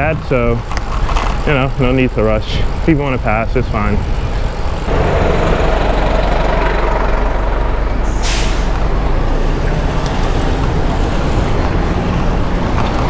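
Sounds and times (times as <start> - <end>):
city traffic: 0.0 - 13.0
road rumble: 0.0 - 13.0
air brake hiss: 8.1 - 8.8.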